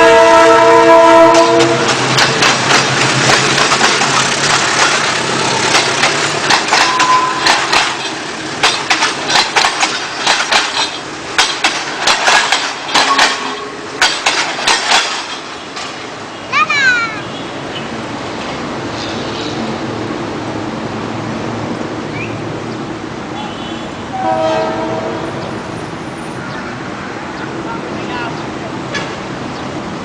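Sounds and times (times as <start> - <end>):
train horn: 0.0 - 2.0, 6.9 - 7.6, 13.1 - 14.0, 23.3 - 25.5
train engine drone: 0.0 - 30.0
wheels clattering over rail joints: 0.9 - 16.3.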